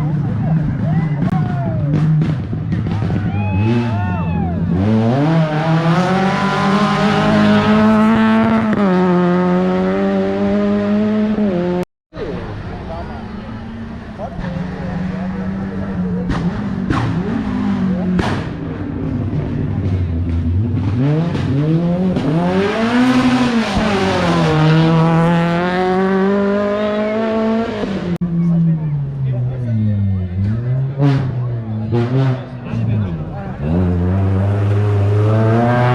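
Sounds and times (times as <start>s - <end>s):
rally car engine at high revs: 4.6s - 11.8s, 13.6s - 35.9s.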